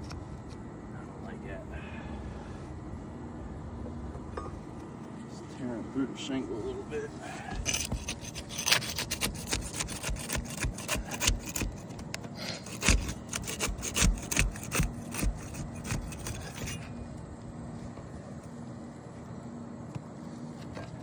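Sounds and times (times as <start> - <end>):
roof shingle scraping and cracking: 7.4 - 16.9.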